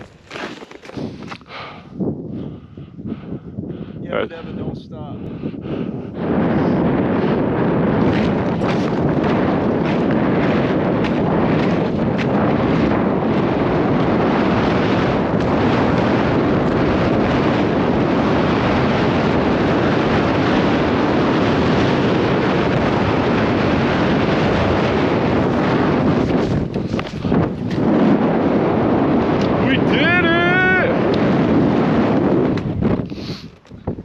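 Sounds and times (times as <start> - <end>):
strong wind buffeting microphone: 0.0 - 34.0.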